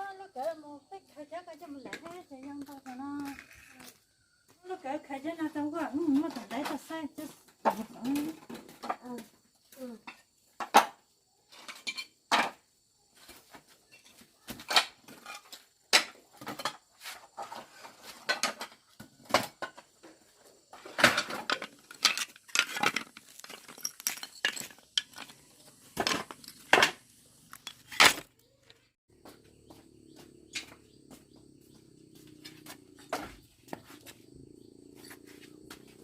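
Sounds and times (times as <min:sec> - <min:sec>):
hard objects clinking: 0:21.1 - 0:28.4.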